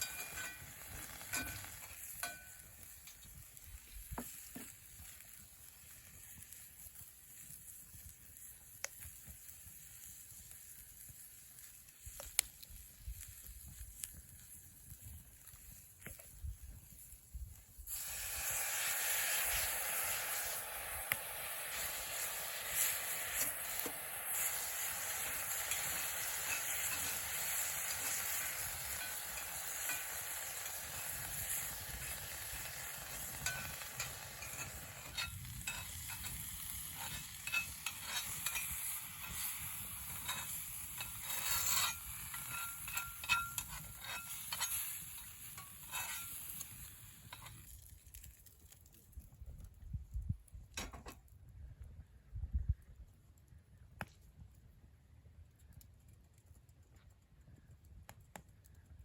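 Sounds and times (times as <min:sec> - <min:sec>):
utensil tapping and scraping pan: 0:00.0 - 0:03.2, 0:04.0 - 0:04.8, 0:33.2 - 0:47.6
food sizzling in a frying pan: 0:00.0 - 0:47.7.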